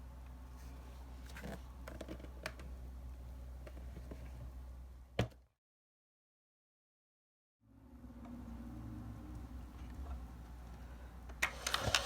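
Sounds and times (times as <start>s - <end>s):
low steady hum: 0.0s - 5.4s.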